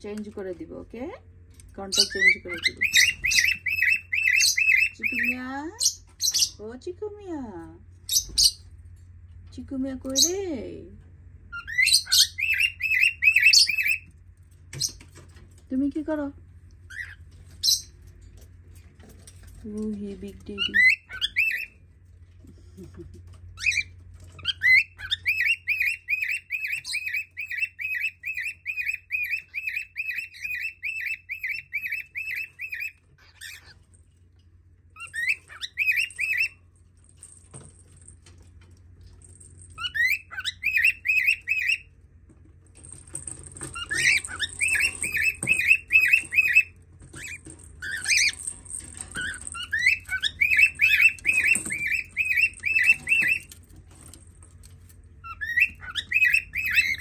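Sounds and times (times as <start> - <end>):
parrots chirping: 1.5 - 6.6, 8.0 - 8.8, 11.5 - 15.4, 16.8 - 18.2, 20.3 - 21.8, 22.8 - 34.0, 34.9 - 37.3, 39.6 - 41.9, 43.0 - 57.0.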